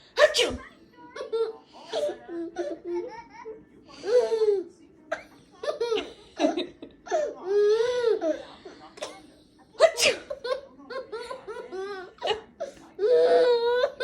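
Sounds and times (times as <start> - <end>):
baby sneezing: 0.2 - 0.7, 9.8 - 10.4.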